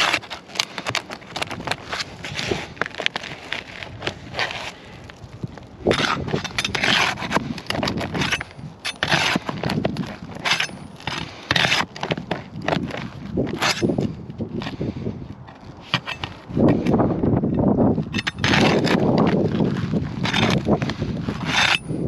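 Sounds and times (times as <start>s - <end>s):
tool scraping roof shingles: 0.0s - 22.0s.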